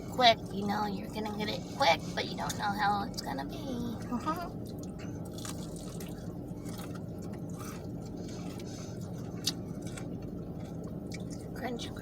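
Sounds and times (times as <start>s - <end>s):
low room hum: 0.0s - 12.0s
person chewing food: 4.5s - 11.6s.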